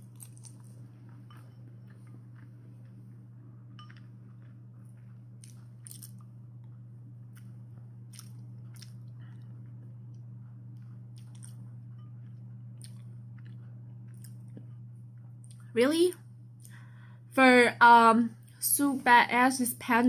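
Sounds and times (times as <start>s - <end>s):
person chewing sticky rice: 0.0s - 15.7s
low hum: 0.0s - 20.0s.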